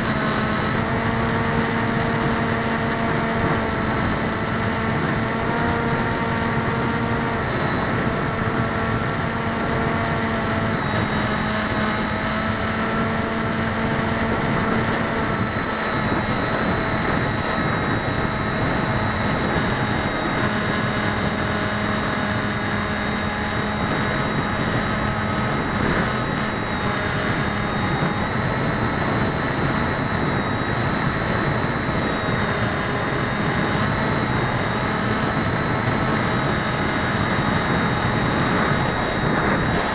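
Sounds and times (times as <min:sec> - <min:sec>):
electric motors and propellers humming: 0:00.0 - 0:39.9
wind rushing: 0:10.2 - 0:39.9.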